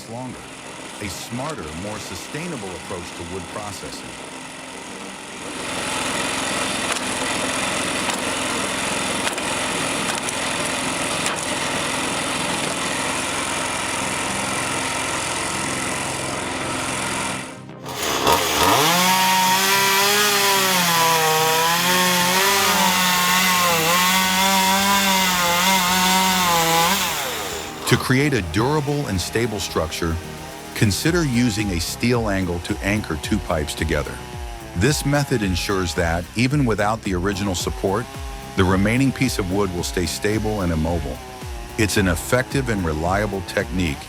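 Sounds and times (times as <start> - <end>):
chainsaw cutting wood: 0.0 - 44.0
noisy machine running: 0.0 - 44.0.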